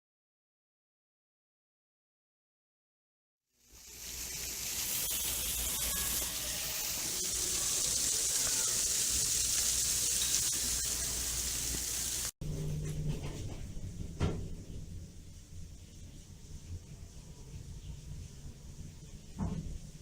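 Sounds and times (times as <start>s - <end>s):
running water rushing: 3.8s - 12.4s.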